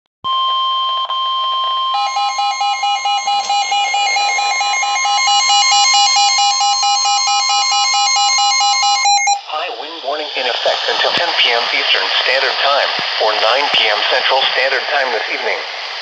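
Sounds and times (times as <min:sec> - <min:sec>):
pulsing electronic alarm beeping: 0:00.3 - 0:09.5
steady warning tone: 0:00.3 - 0:09.8.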